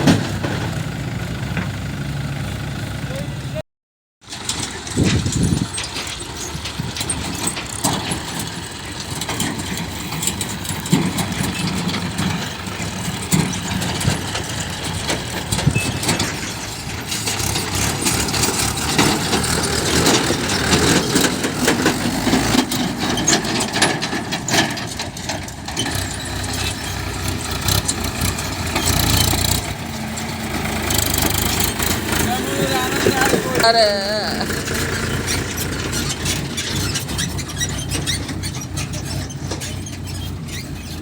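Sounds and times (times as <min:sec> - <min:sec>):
diesel engines running: 0:00.0 - 0:03.6, 0:04.2 - 0:41.0
short knocks and clatters: 0:04.3 - 0:32.2.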